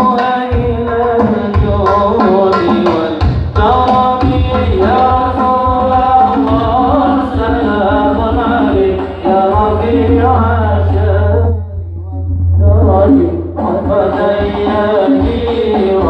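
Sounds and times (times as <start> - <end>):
hand-drum percussion: 0.0 - 16.0
person singing: 0.0 - 16.0
steady bass: 7.7 - 14.0.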